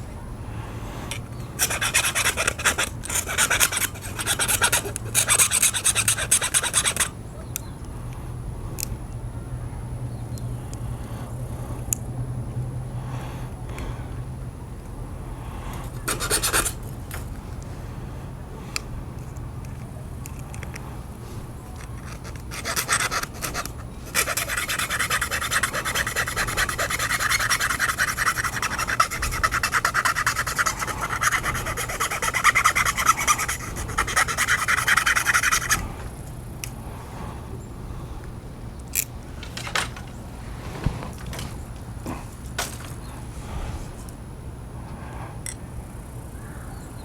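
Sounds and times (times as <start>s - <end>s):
file rasping on metal: 1.6s - 7.1s, 16.1s - 16.8s, 22.0s - 35.8s.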